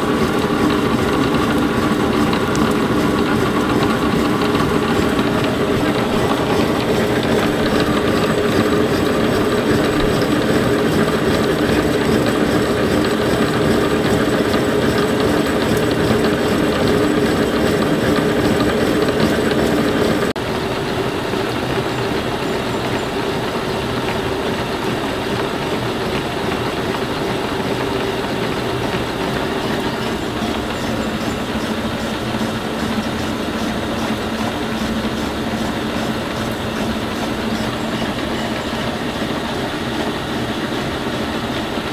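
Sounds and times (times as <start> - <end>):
cutter chattering: 0.0 - 20.3, 27.8 - 39.8
milling machine chugging drone: 0.0 - 41.9.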